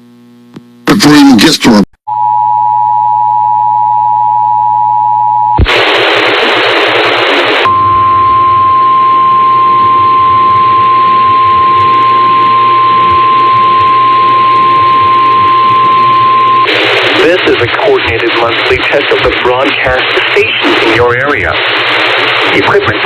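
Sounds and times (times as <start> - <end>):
radio hiss: 5.6 - 7.7, 16.6 - 23.0
loud static burst: 5.6 - 8.7, 11.7 - 23.0.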